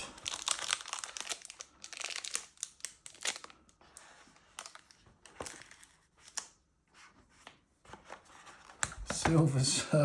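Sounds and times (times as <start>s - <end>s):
packaging crinkling and rustling: 0.0s - 6.6s.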